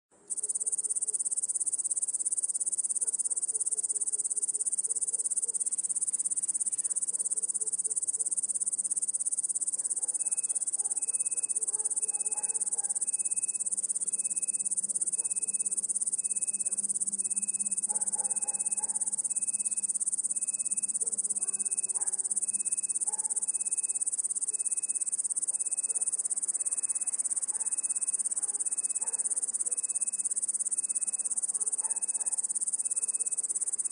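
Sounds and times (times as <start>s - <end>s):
crickets chirping: 0.2s - 33.9s
faint electronic beep: 0.3s - 33.9s
distant dogs barking: 17.9s - 19.2s, 21.0s - 22.4s, 31.5s - 32.4s.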